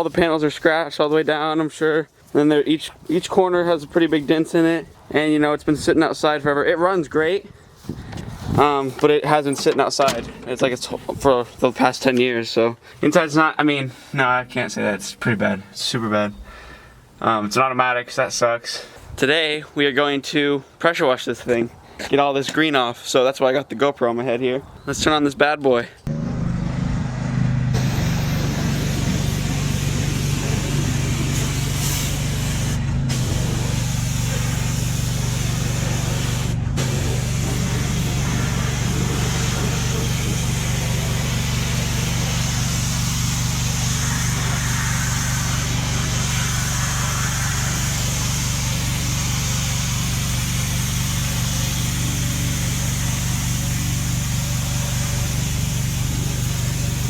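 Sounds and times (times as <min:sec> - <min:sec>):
pressure washer motor humming: 0:09.6 - 0:10.9, 0:26.1 - 0:57.0
high-pressure water jet hissing: 0:27.8 - 0:57.0.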